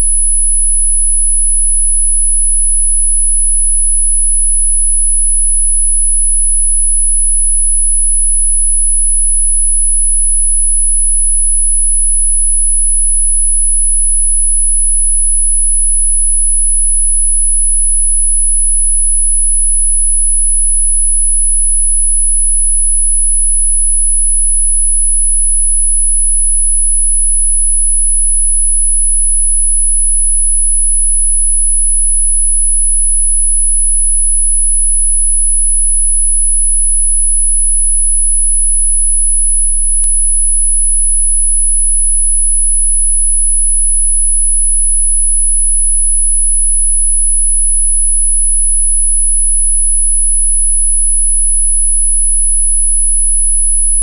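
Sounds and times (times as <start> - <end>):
high-pitched sine tone: 0.0 - 54.0.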